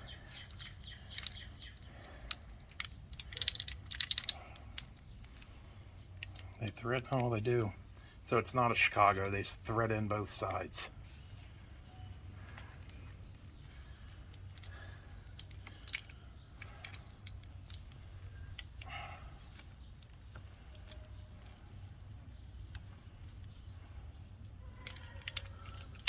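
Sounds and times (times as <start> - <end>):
steady low hum: 0.0 - 24.8
metallic clicks of tools handled: 0.1 - 7.8, 11.9 - 23.7, 24.4 - 26.0.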